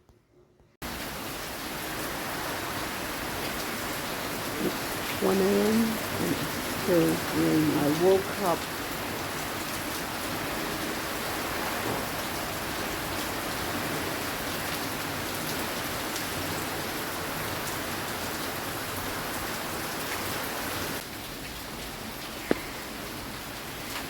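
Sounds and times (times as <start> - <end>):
steady heavy rain: 0.8 - 24.0.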